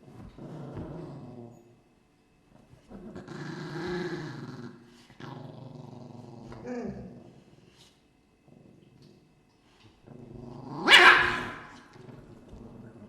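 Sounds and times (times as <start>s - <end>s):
dogs growling: 0.2s - 1.7s, 2.8s - 7.6s, 8.4s - 9.3s, 10.0s - 13.0s.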